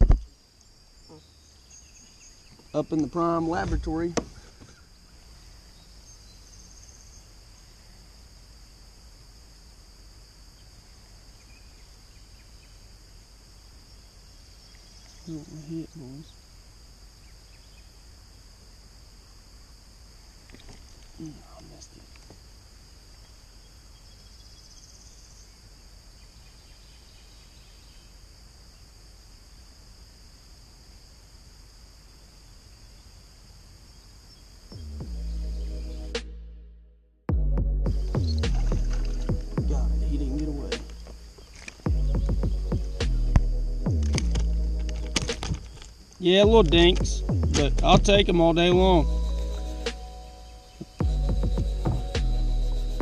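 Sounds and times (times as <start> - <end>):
faint chirps: 0.0 - 8.1, 14.4 - 16.4, 47.9 - 53.0
insect chorus: 0.0 - 36.7, 37.3 - 53.0.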